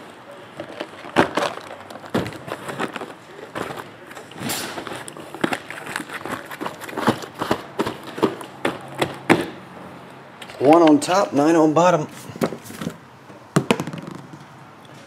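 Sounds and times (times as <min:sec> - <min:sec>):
cards rustling: 0:00.6 - 0:08.8.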